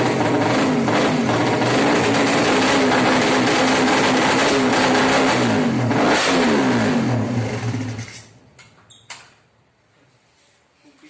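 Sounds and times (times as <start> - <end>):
motorcycle engine revving: 0.0 - 8.3.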